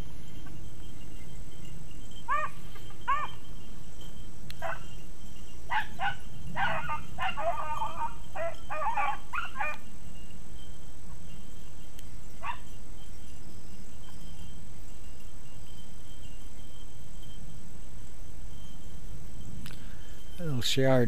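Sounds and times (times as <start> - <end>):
dogs baying: 2.3 - 3.4, 4.6 - 4.9, 5.7 - 9.8, 12.4 - 12.7.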